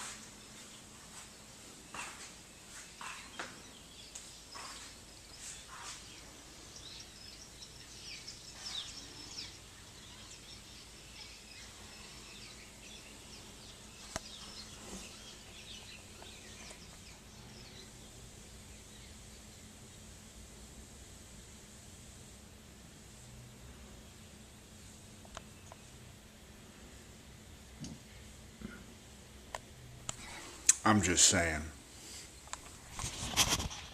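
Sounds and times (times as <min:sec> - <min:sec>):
birds chirping and twittering: 0:00.0 - 0:20.4, 0:23.5 - 0:27.0.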